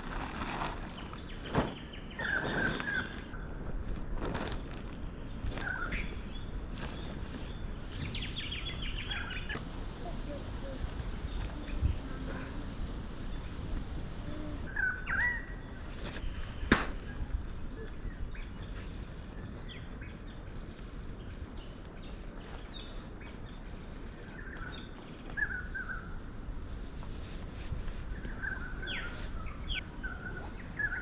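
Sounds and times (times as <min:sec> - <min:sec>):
low outdoor rumble: 0:03.3 - 0:25.2
birds chirping: 0:05.2 - 0:23.7, 0:28.1 - 0:31.0.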